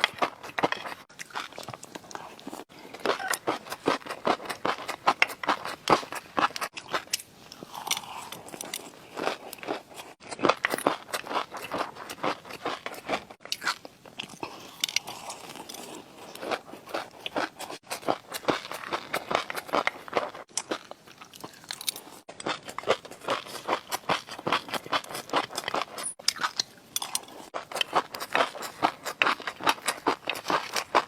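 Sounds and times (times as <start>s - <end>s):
crunchy chewing: 0.0s - 31.0s.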